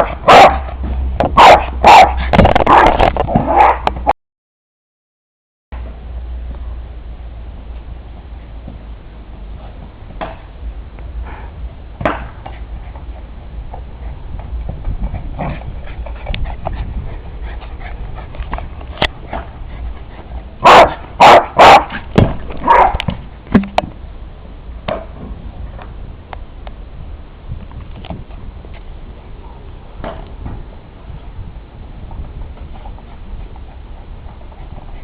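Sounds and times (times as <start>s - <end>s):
dog barking: 0.0s - 0.7s, 1.4s - 2.9s, 3.5s - 3.9s, 20.6s - 21.9s, 22.6s - 23.0s
dog yipping: 3.5s - 3.8s, 22.6s - 23.0s.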